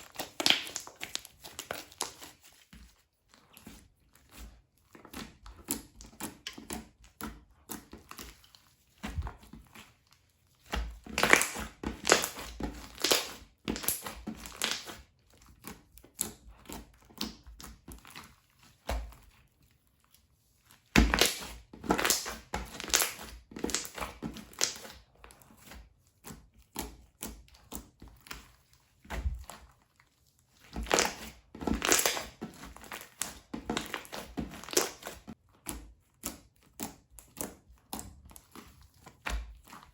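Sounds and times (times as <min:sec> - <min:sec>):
slime crackling and popping: 0:00.0 - 0:02.3, 0:10.9 - 0:15.0, 0:21.0 - 0:25.0, 0:30.8 - 0:35.3.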